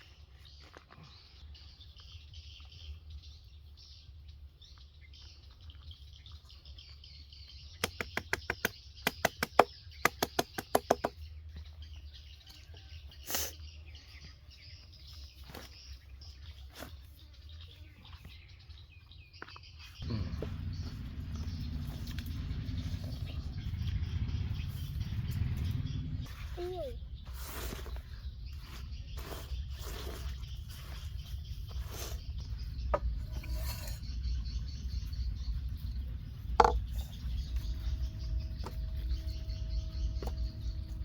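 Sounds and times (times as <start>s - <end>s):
faint high chirping: 11.6s - 41.0s
loud rumbling noise: 20.0s - 26.4s.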